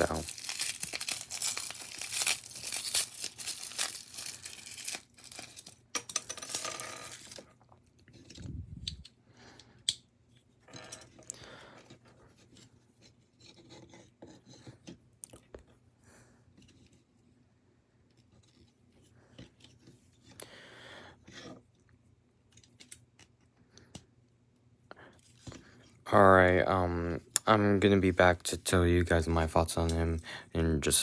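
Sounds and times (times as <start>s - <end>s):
plastic packaging crinkling: 0.0s - 5.8s, 6.5s - 7.4s
handling clicks and rustles: 0.0s - 7.4s.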